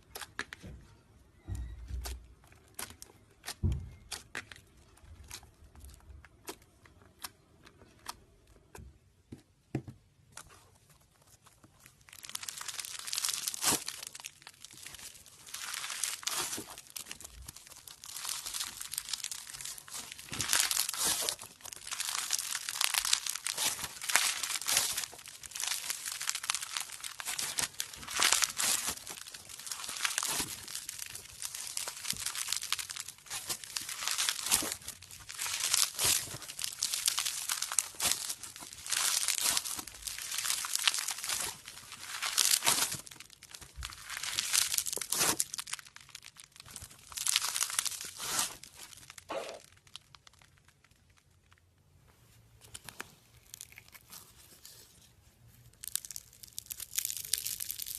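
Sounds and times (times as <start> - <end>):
slime crackling when squeezed: 11.8 - 51.7, 53.3 - 54.4, 55.6 - 57.9.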